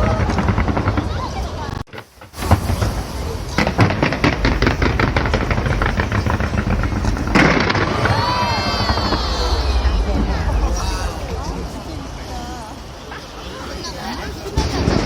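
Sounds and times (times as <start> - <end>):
fireworks bangs and crackles: 0.0 - 15.0.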